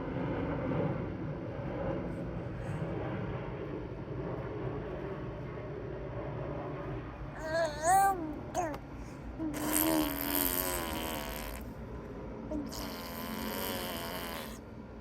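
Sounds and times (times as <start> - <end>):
baby vocal sound: 7.4 - 11.7, 12.5 - 14.6
baby blowing raspberries: 9.5 - 11.7, 12.5 - 14.6.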